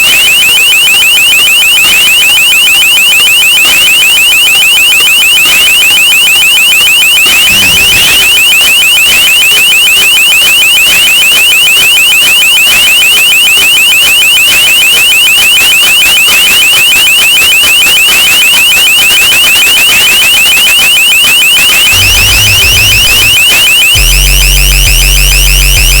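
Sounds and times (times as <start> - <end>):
shrill warbling alert tone: 7.2 - 8.9, 21.9 - 26.0
deep steady drone: 21.9 - 23.3, 24.0 - 26.0.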